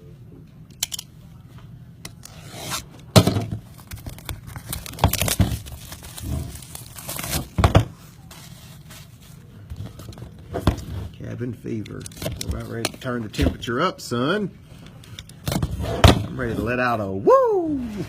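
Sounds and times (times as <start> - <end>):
packaging ripping and crinkling: 3.6 - 9.0.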